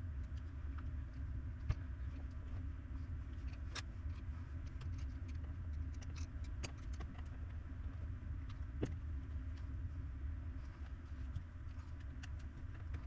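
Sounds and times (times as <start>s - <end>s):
steady low hum: 0.0s - 13.0s
light clicks and taps: 3.2s - 9.7s, 10.7s - 13.0s.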